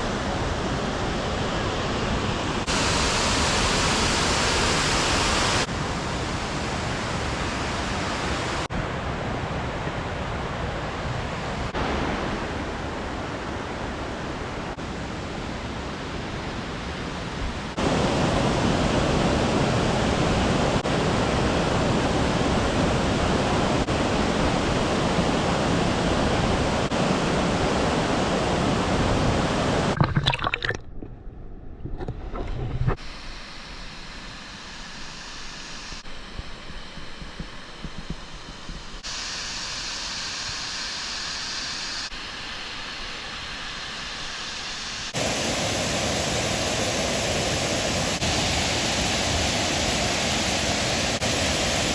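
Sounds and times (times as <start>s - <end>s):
waterfall roaring: 0.0s - 10.4s, 17.7s - 30.7s, 45.2s - 51.9s.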